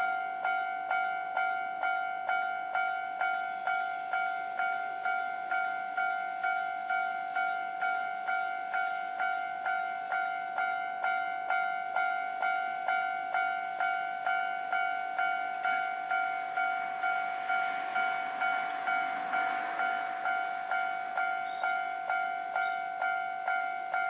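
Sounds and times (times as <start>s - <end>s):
level-crossing alarm bell ringing: 0.0s - 24.0s
passing train rushing: 12.7s - 24.0s.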